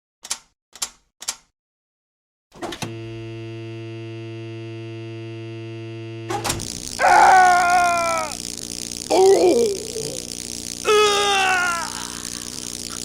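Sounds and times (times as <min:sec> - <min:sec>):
electrical hum-buzz: 0:02.8 - 0:13.0
loud electrical crackling: 0:06.3 - 0:13.0.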